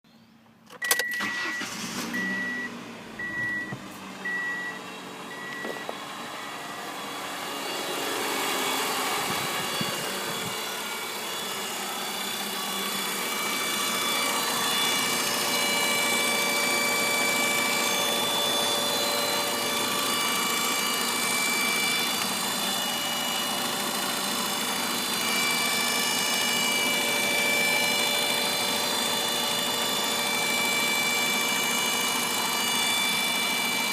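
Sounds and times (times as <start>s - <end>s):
high engine whine: 0.6s - 33.9s
short beeps: 0.8s - 6.8s
car engine running: 1.6s - 33.9s.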